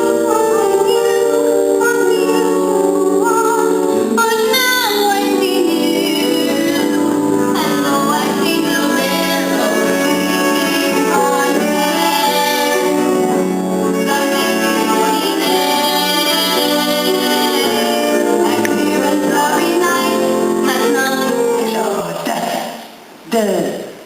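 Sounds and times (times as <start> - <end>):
instrumental accompaniment: 0.0 - 22.5
young voices singing: 0.0 - 22.6.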